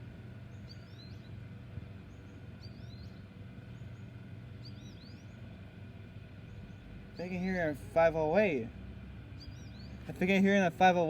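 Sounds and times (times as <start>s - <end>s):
low background hum: 0.0s - 11.0s
songbird chirping: 2.0s - 5.5s, 9.4s - 10.2s.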